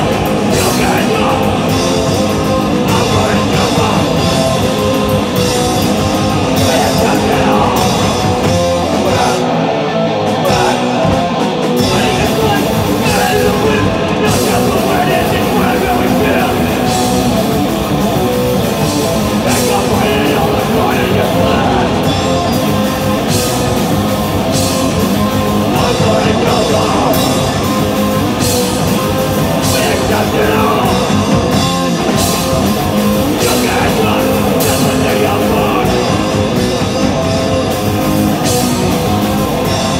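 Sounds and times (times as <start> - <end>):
pounding drums: 0.0 - 9.5, 10.5 - 39.9
shouted vocals: 0.0 - 17.5, 19.4 - 22.6, 25.4 - 28.1, 29.0 - 32.2, 33.2 - 37.2
bass guitar: 0.0 - 39.9
distorted electric guitars: 0.0 - 39.9.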